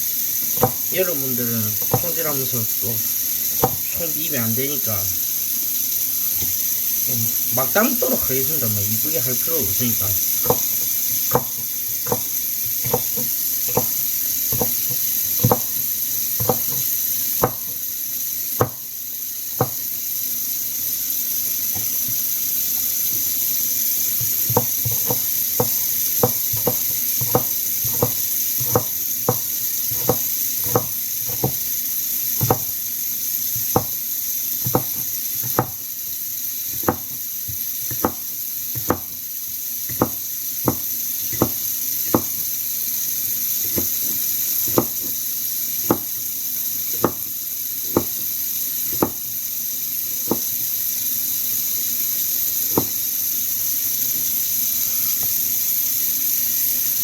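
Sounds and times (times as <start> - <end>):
water hissing: 0.0 - 57.0
knife chopping vegetables: 0.5 - 5.2, 6.3 - 17.8, 18.6 - 18.8, 21.8 - 22.3, 24.2 - 32.8, 33.6 - 34.0, 34.6 - 35.8, 36.7 - 39.2, 39.9 - 42.5, 43.6 - 45.2, 45.8 - 49.4, 50.2 - 50.6, 52.7 - 53.0.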